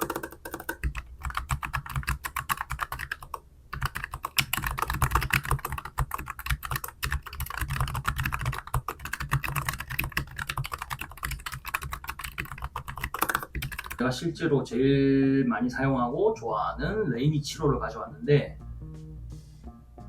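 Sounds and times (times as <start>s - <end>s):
fast typing on mechanical keyboard: 0.0s - 14.0s.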